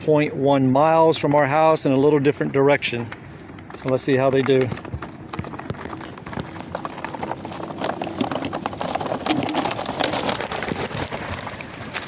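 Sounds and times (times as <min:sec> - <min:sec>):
pigeon wings fluttering: 0:04.6 - 0:12.0.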